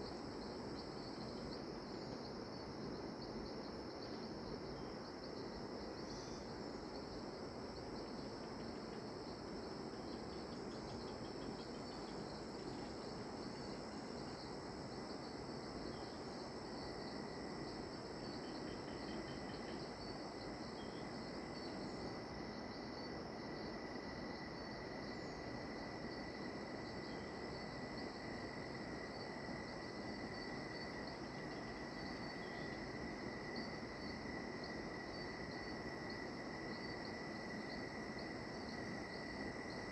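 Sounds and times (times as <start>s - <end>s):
background hiss: 0.0s - 39.9s
insects trilling: 0.0s - 39.9s
lower steady insect trill: 0.0s - 39.9s.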